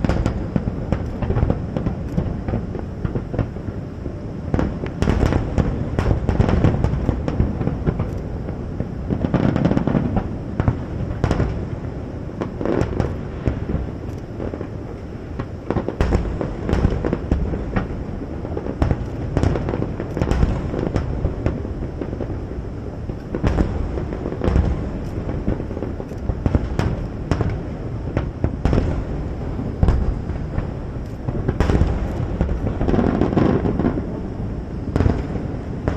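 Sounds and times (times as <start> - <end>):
fireworks cracking: 0.0 - 35.9
rumble of firework booms: 0.0 - 35.9.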